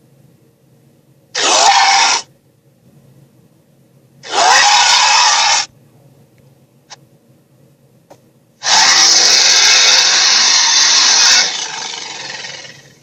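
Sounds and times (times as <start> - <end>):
creature roar: 1.4 - 2.3, 4.2 - 5.7, 8.6 - 13.0.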